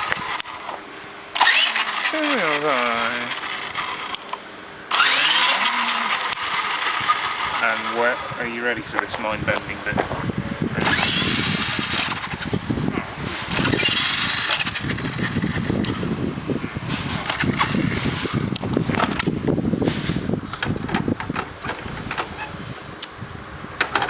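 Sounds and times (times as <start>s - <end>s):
remote-control truck motor surging: 0.0s - 4.3s, 4.9s - 8.6s, 10.8s - 16.2s, 16.9s - 19.3s
truck rattling and crackling: 0.0s - 22.7s, 23.8s - 24.0s.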